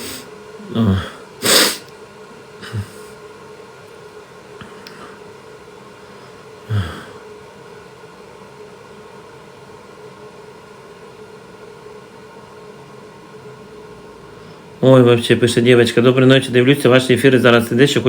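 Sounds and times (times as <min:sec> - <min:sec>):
man coughing: 0:00.0 - 0:01.8, 0:02.6 - 0:03.2, 0:06.7 - 0:07.2
faint room hum: 0:00.0 - 0:18.0.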